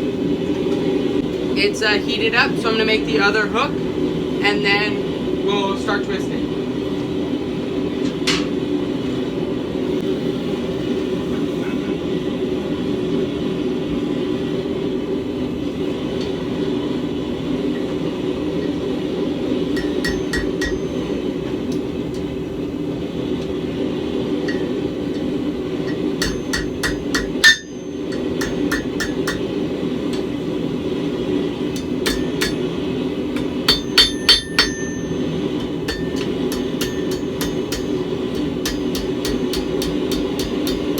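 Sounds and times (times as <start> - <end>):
anvil ringing: 19.8 - 21.5, 24.5 - 24.9, 25.8 - 29.6, 31.8 - 40.9
hammer striking steel on anvil: 19.8 - 22.3, 24.4 - 30.3, 31.7 - 40.9.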